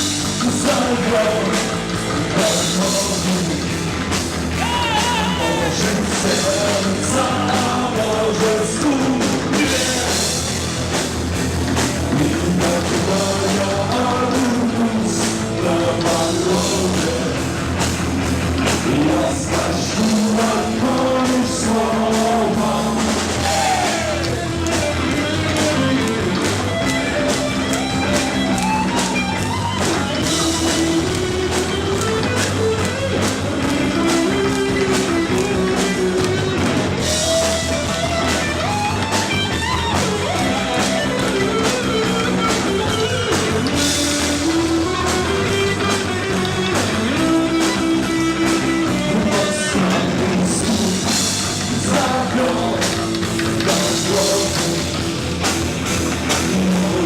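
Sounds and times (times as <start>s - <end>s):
rock band playing: 0.0s - 57.0s.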